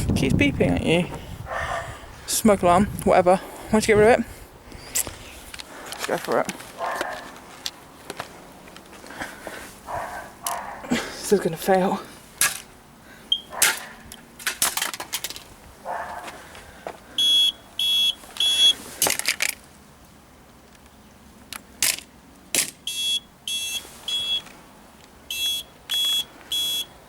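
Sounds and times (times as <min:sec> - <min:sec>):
smoke alarm beeping: 0:13.3 - 0:13.6, 0:17.2 - 0:18.8, 0:22.9 - 0:24.5, 0:25.3 - 0:26.9.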